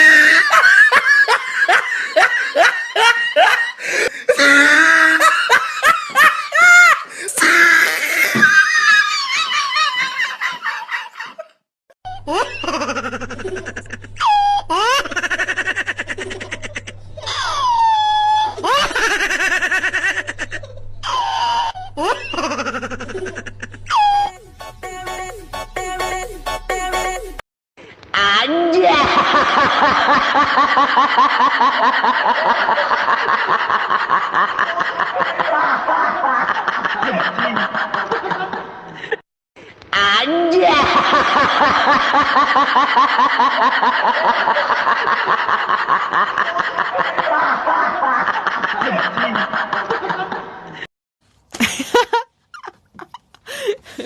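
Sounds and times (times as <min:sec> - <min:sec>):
laugh with squeals: 0:00.0 - 0:24.4, 0:28.6 - 0:50.9, 0:51.6 - 0:54.0
high-pitched giggling laugh: 0:12.1 - 0:24.4.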